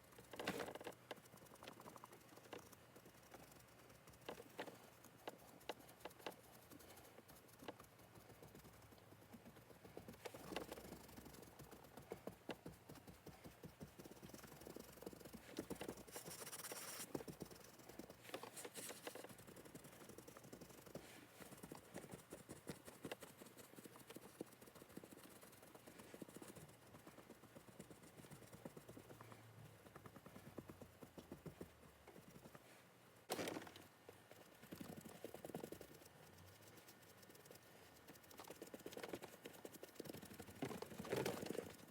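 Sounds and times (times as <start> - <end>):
handling noises: 32.6 - 34.3.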